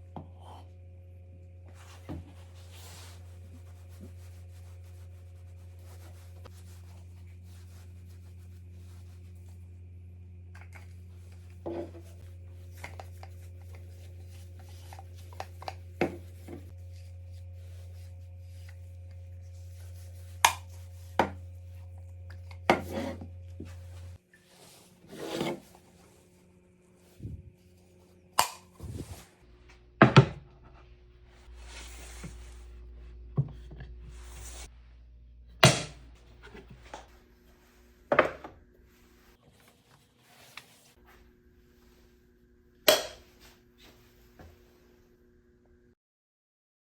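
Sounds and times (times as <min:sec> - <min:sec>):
steady low hum: 0:00.0 - 0:39.4
wood scraping strokes: 0:10.8 - 0:26.2.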